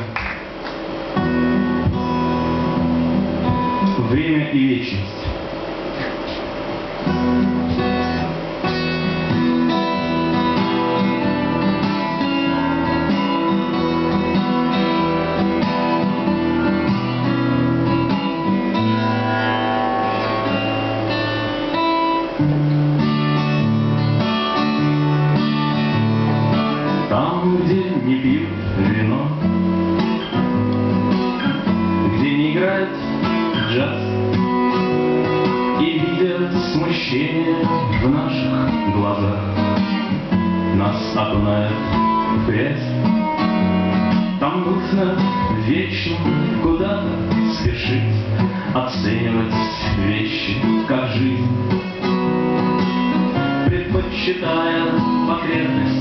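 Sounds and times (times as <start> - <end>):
acoustic guitar playing: 0.0 - 56.0.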